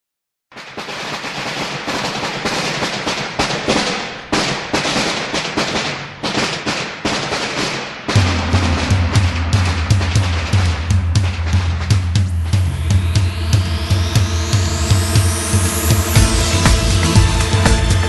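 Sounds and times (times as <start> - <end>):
firecrackers crackling: 0.5 - 12.9
band drums and bass playing: 8.2 - 18.0.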